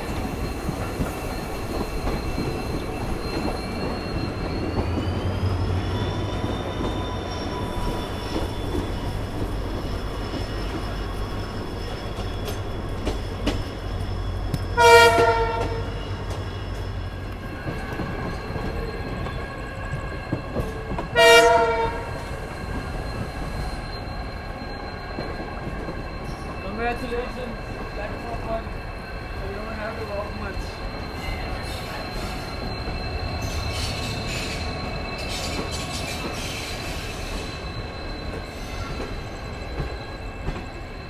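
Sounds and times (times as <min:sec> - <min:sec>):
train rumble inside coach: 0:00.0 - 0:41.0
train horn blasts: 0:14.8 - 0:16.4, 0:21.1 - 0:22.3.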